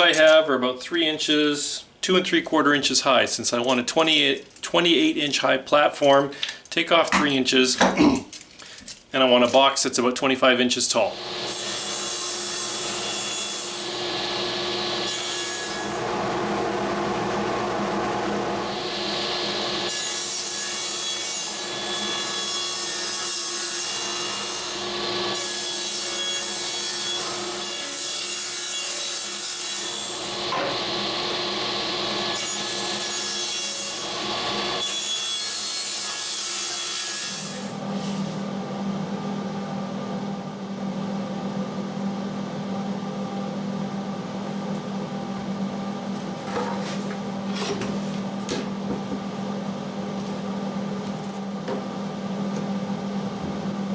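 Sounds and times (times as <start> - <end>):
power saw cutting plywood: 11.1 - 38.5.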